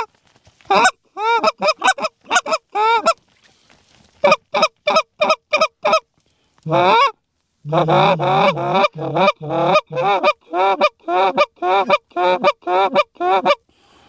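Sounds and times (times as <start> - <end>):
goose call honks: 6.7 - 7.1, 7.7 - 13.6.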